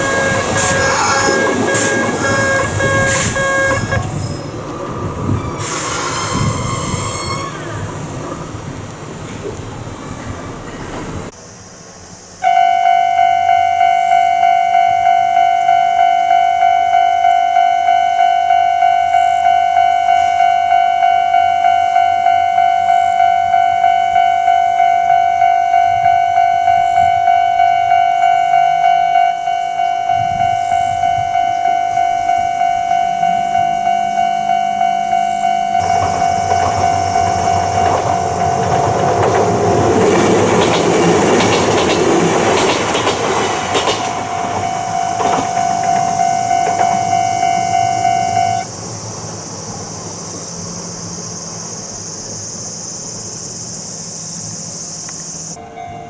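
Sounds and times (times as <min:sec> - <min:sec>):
level crossing alarm ringing: 0:00.0 - 0:08.2, 0:12.4 - 0:48.7
low rising train hum: 0:00.0 - 0:56.0
train running noise: 0:00.0 - 0:56.0.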